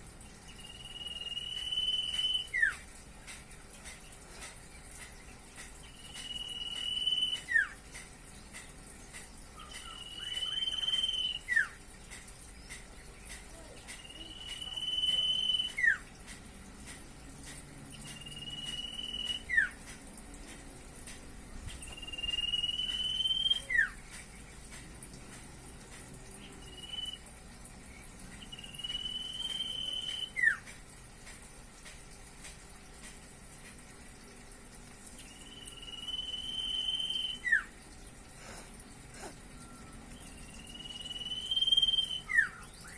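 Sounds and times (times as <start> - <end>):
bird whistling song: 0.5 - 2.8, 5.9 - 7.8, 9.6 - 11.8, 14.0 - 16.1, 17.9 - 19.8, 21.8 - 24.0, 26.4 - 27.2, 28.4 - 30.6, 35.2 - 37.7, 39.6 - 42.9.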